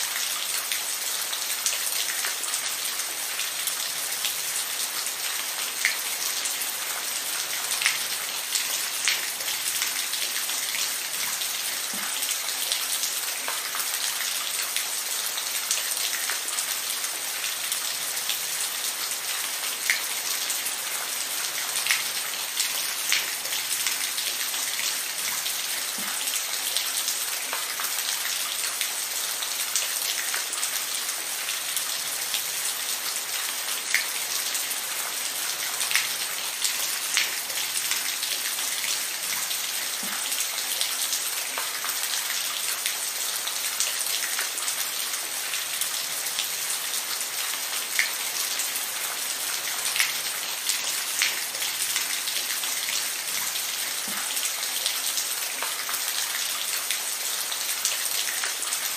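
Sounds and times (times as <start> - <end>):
steady rain hiss: 0.0 - 58.9.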